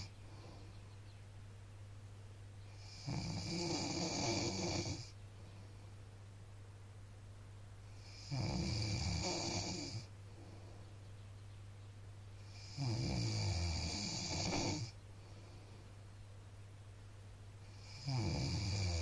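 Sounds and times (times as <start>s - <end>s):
quiet breathing: 0.0s - 1.2s, 2.6s - 6.2s, 7.8s - 11.6s, 12.2s - 16.3s, 17.5s - 19.0s
man snoring: 2.8s - 5.1s, 8.0s - 10.1s, 12.5s - 15.0s, 17.7s - 19.0s.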